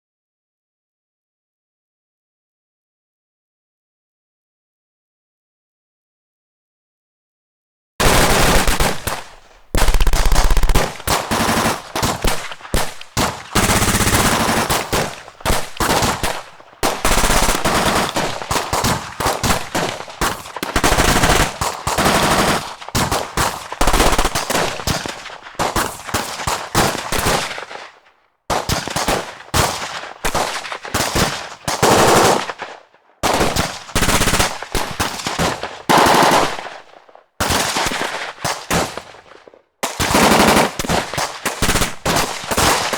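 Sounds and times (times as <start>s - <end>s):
single gunshots: 8.0s - 27.9s
automatic gunfire: 8.0s - 42.9s.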